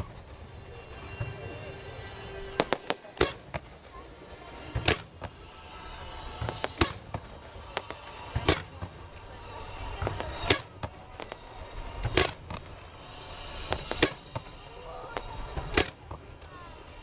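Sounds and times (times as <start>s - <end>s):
firework crackle: 0.0s - 17.0s
firework shells bursting: 4.6s - 16.5s.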